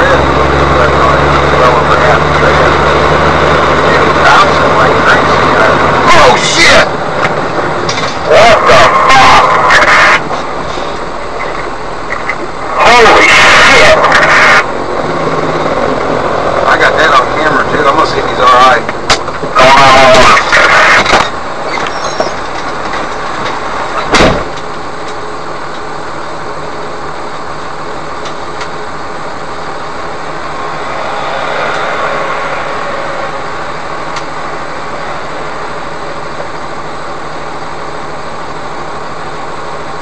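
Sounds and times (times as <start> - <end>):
road noise: 0.0 - 40.0
vehicle engine: 0.0 - 40.0
sharp loud thump: 24.1 - 24.5.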